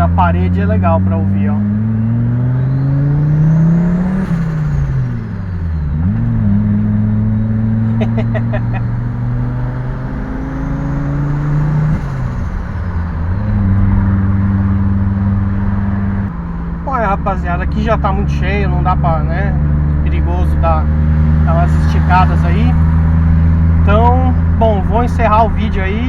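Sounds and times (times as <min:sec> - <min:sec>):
car engine accelerating hard: 0:00.0 - 0:26.0
turbo whine and whistle: 0:01.7 - 0:19.0.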